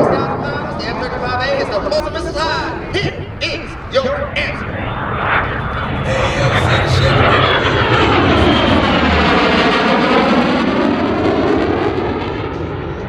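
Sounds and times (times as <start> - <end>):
jet flying past: 0.0 - 13.0.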